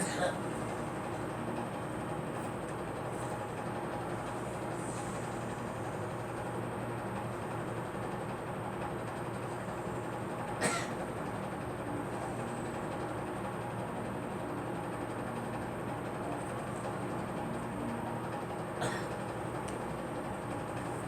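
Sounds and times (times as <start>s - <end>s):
person coughing: 0.0s - 0.5s, 10.6s - 11.0s, 18.8s - 19.2s
steady mechanical hum: 0.0s - 21.0s.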